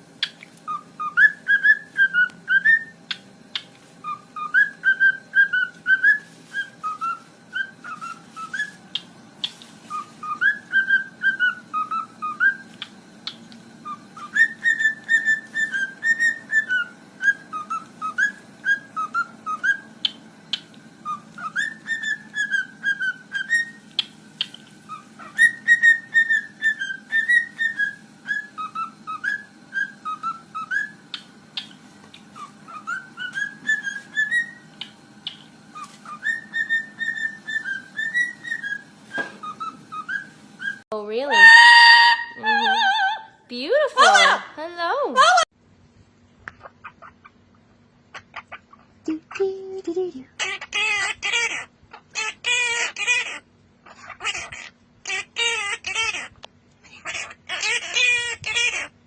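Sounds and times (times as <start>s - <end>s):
parrot whistling a tune: 0.2s - 43.4s.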